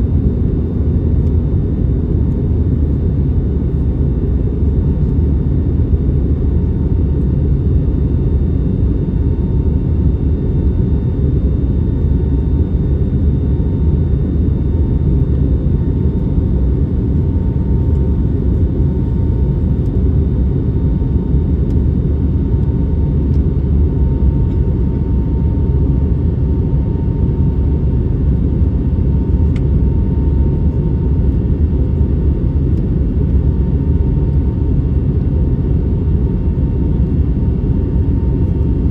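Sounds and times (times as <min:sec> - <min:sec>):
aircraft cabin engine rumble: 0:00.0 - 0:38.9.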